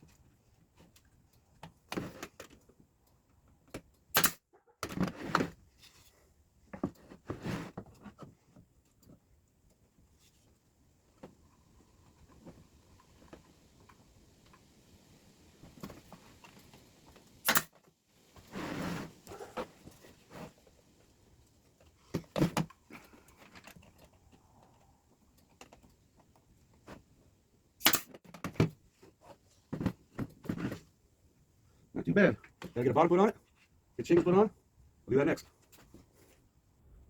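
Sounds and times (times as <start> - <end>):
scraping rustle: 5.0 - 8.6, 18.2 - 24.4.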